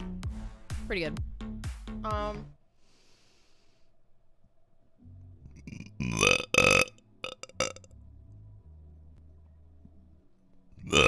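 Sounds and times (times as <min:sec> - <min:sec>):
woman burping: 0:05.6 - 0:07.9.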